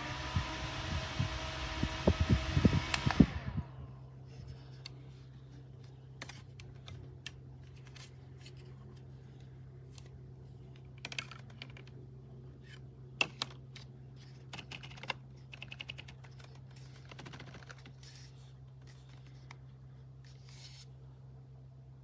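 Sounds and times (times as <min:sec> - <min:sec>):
small fan humming: 0:00.0 - 0:22.0.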